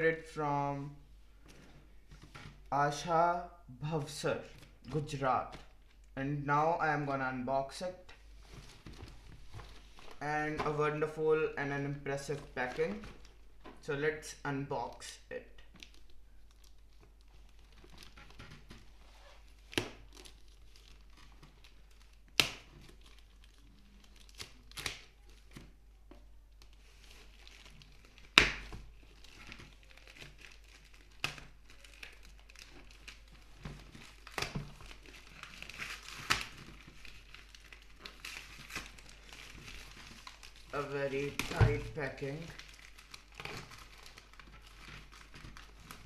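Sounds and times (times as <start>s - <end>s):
packaging crinkling and tearing: 15.6s - 46.0s
sharp packaging snaps: 19.6s - 25.7s, 27.4s - 41.9s.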